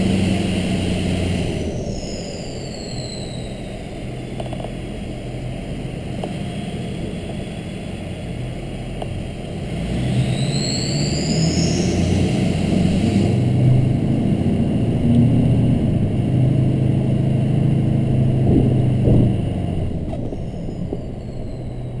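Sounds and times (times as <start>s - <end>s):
diesel engine drone: 0.0s - 22.0s
turbo whistle: 1.8s - 3.9s, 10.2s - 12.1s.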